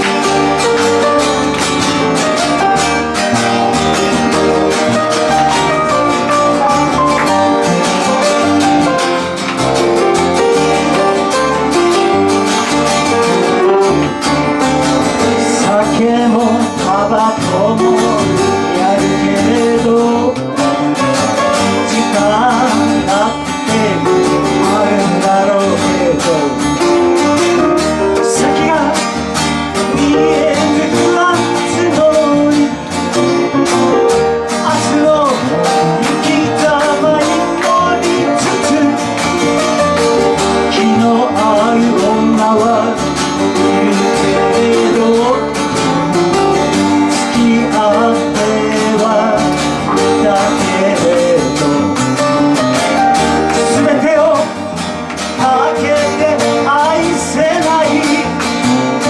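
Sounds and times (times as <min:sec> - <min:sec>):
guitar-led music: 0:00.0 - 0:59.0.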